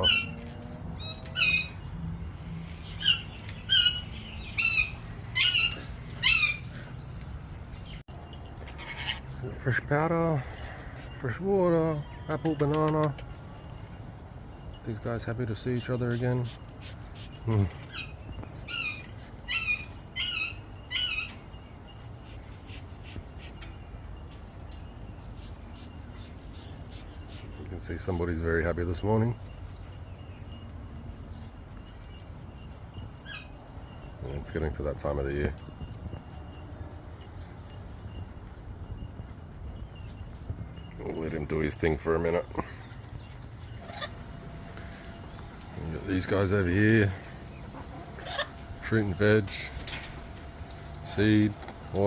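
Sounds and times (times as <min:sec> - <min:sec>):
parrot squawking: 0:00.0 - 0:02.1, 0:02.7 - 0:07.2, 0:17.9 - 0:21.4, 0:43.7 - 0:51.0.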